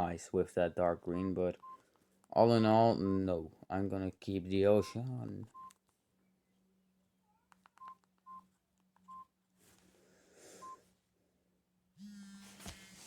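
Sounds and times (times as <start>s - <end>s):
phone keypad beeps: 4.8s - 5.8s, 9.1s - 9.3s.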